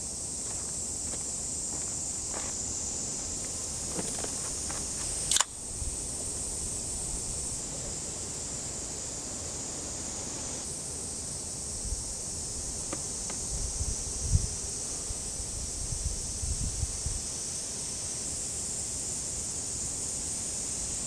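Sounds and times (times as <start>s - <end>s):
high-pitched insect chorus: 0.0s - 21.0s
sharp click: 5.0s - 5.6s.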